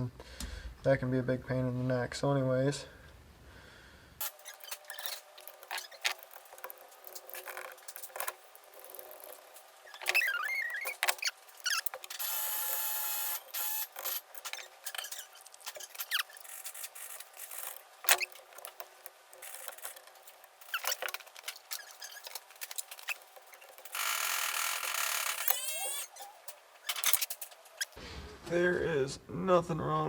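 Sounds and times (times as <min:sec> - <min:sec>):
metal parts clicking and clinking: 0:04.2 - 0:28.0.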